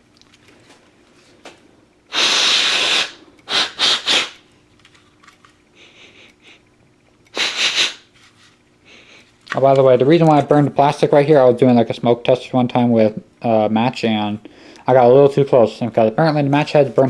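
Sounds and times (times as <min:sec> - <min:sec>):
compressed air hissing: 0:02.1 - 0:04.5, 0:07.3 - 0:08.1.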